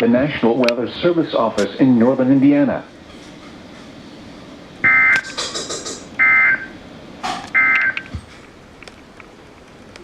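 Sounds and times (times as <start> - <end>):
digital data tone bursts: 4.8 - 5.5, 6.2 - 6.8, 7.6 - 8.0.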